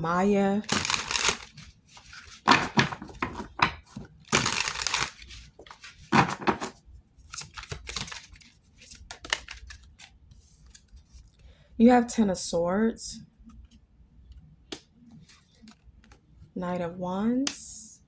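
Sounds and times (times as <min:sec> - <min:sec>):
cards rustling and sliding: 0:00.7 - 0:11.0.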